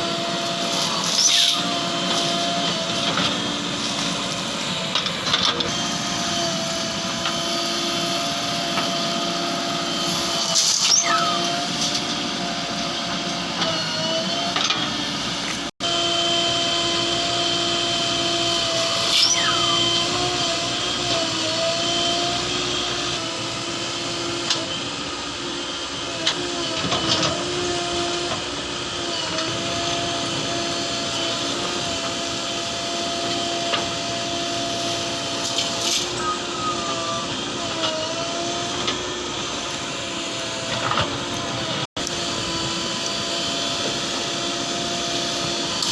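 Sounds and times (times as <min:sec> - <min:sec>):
backhoe diesel engine running: 0:00.0 - 0:15.7, 0:16.5 - 0:45.9
short falling squeaks: 0:10.5 - 0:11.9, 0:19.0 - 0:20.2.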